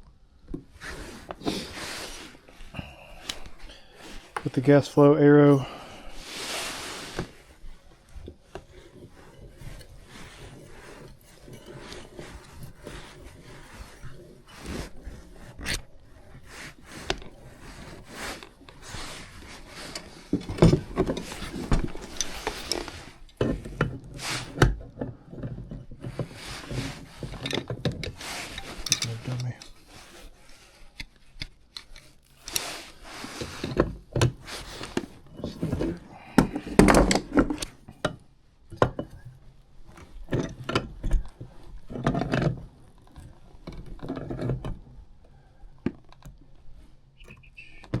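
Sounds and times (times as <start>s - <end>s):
tools rubbing and scraping: 0.6s - 38.0s.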